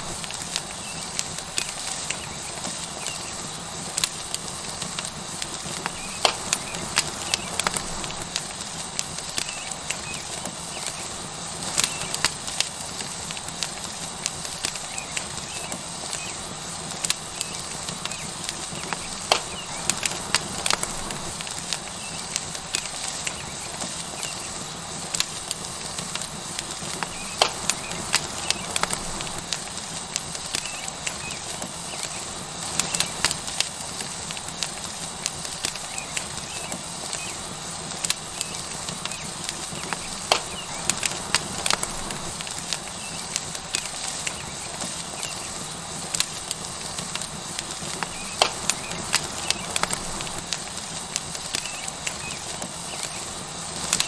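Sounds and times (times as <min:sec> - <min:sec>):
steak sizzling on hot rock: 0:00.0 - 0:54.0
wood fire crackling and popping: 0:00.0 - 0:54.0.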